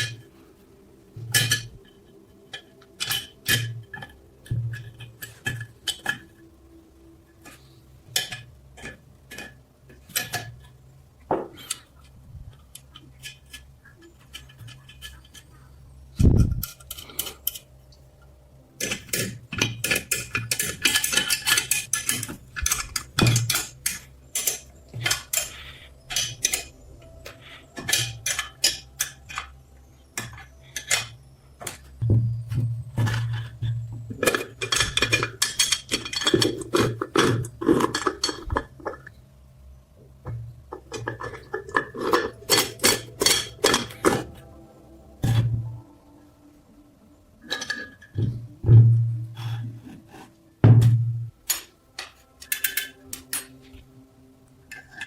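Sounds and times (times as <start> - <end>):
small metal parts clinking: 16.2 - 17.8, 18.8 - 32.0, 32.6 - 39.2, 51.5 - 53.7.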